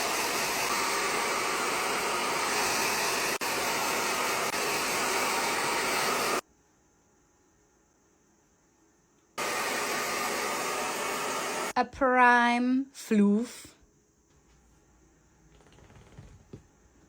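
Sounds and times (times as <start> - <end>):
hair dryer blowing: 0.0 - 6.4, 9.4 - 11.8.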